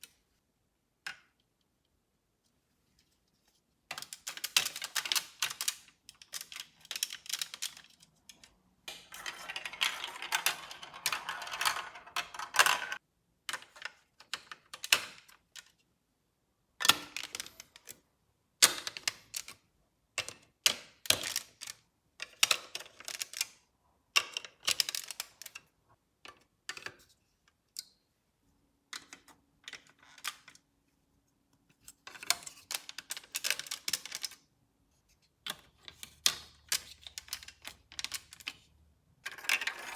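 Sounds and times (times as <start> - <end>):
marbles rattling through plastic run: 9.0 - 13.0, 39.3 - 39.9.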